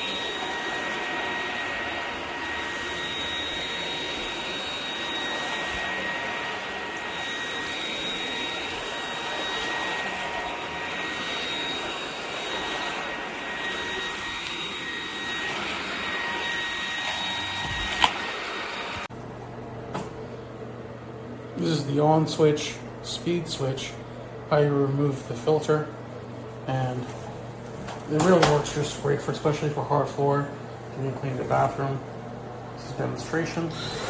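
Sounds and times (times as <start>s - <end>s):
stick vacuum whining: 0.0s - 19.1s, 33.6s - 34.0s.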